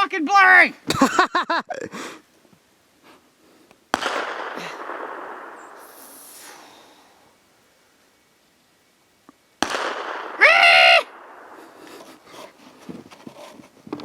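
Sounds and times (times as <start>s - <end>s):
rifle shot with echo: 3.9s - 6.1s, 9.6s - 11.9s.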